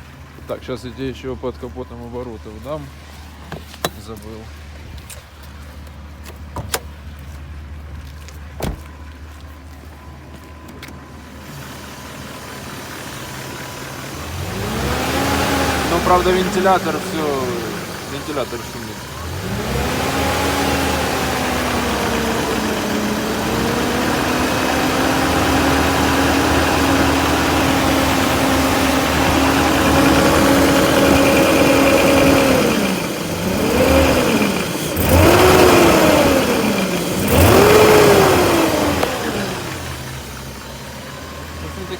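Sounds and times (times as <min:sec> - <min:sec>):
car engine revving: 0:11.4 - 0:41.9.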